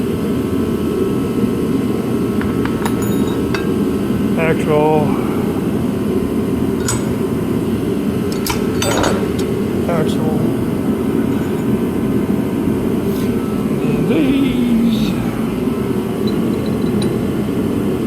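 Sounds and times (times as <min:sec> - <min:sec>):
metallic clinks of parts: 0:02.8 - 0:03.8, 0:08.3 - 0:09.4, 0:16.2 - 0:17.4.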